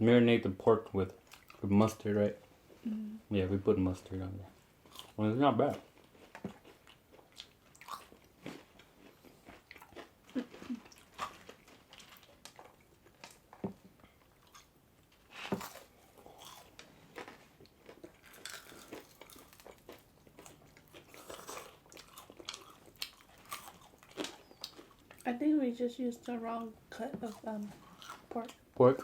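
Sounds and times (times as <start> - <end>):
short food crunches: 6.0 - 13.4, 15.4 - 25.3
person biting and chewing: 6.3 - 10.2, 15.4 - 25.2.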